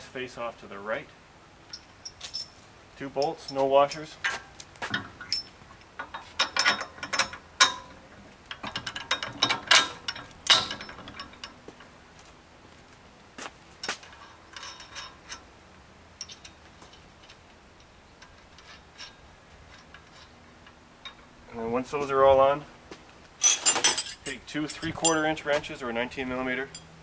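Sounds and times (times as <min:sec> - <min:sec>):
bolts clinking against metal rack: 0:01.7 - 0:11.9, 0:13.8 - 0:15.5, 0:16.2 - 0:21.3, 0:23.4 - 0:26.9.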